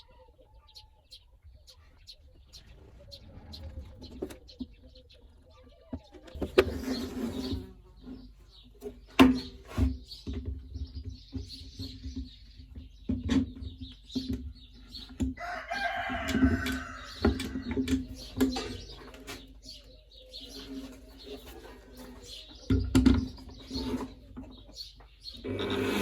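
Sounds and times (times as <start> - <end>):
drawn-out animal call: 25.4 - 26.0.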